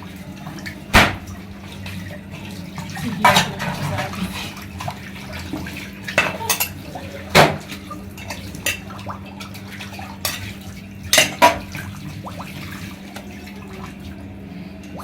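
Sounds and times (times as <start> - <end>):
dishes and utensils clinking: 2.8 - 4.6, 5.4 - 9.0, 10.2 - 11.8.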